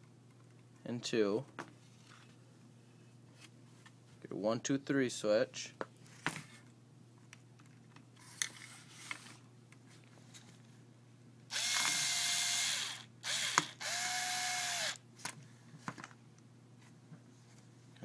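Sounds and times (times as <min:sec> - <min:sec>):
power drill motor running: 0:11.5 - 0:15.0.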